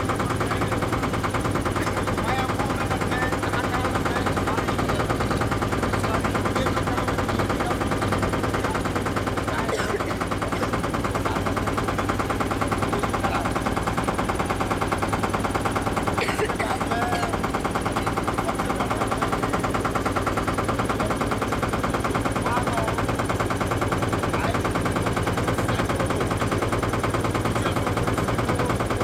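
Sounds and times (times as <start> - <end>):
boat engine chugging: 0.0 - 29.0.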